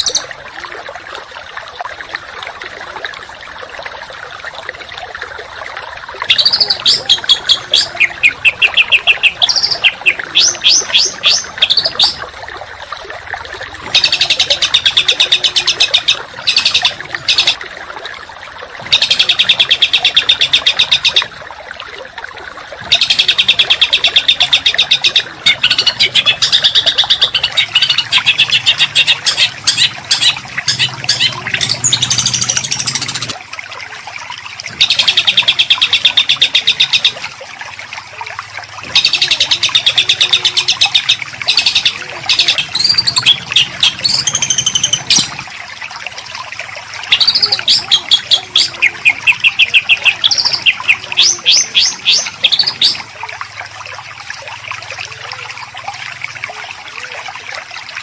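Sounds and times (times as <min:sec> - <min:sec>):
recorded songbird song: 0:00.0 - 0:00.3, 0:06.2 - 0:12.3, 0:13.8 - 0:17.6, 0:18.8 - 0:21.3, 0:22.8 - 0:33.4, 0:34.7 - 0:37.3, 0:38.8 - 0:45.5, 0:47.0 - 0:53.1.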